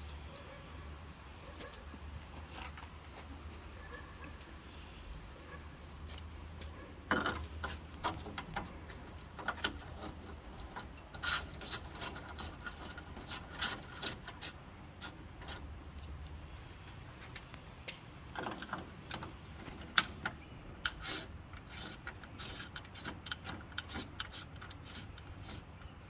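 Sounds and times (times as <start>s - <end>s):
keys jangling: 0.0s - 0.6s, 7.2s - 16.4s.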